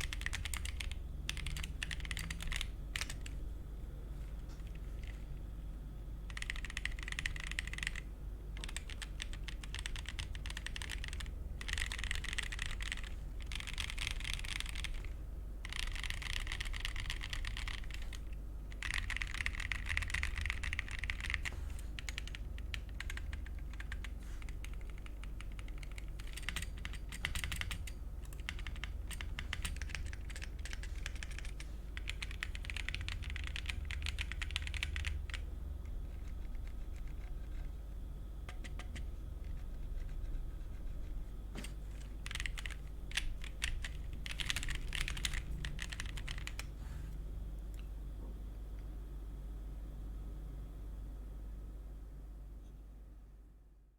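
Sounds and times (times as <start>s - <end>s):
mechanical keyboard typing: 0.0s - 3.4s, 4.6s - 5.2s, 6.2s - 37.8s, 38.4s - 46.7s.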